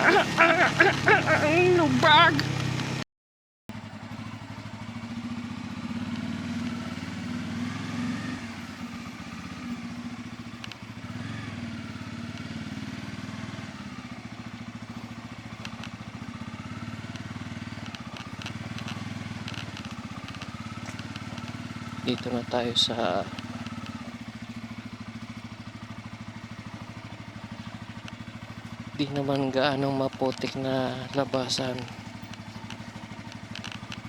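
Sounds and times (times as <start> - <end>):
motorcycle engine running: 0.0 - 3.0, 3.7 - 34.0
sharp ticks: 15.5 - 16.0, 17.1 - 22.3, 23.2 - 24.6, 30.0 - 34.0.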